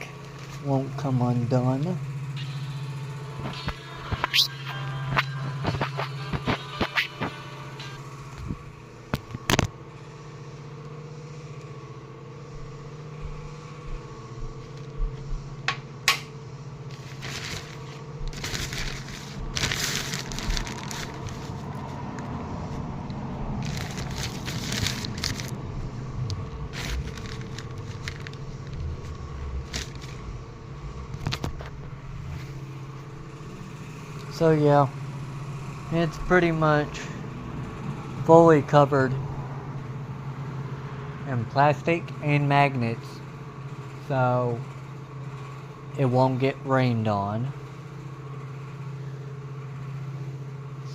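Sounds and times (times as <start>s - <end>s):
steady low hum: 0.0s - 50.9s
plastic sheeting crinkling: 16.9s - 22.0s, 23.6s - 25.6s, 26.4s - 30.3s.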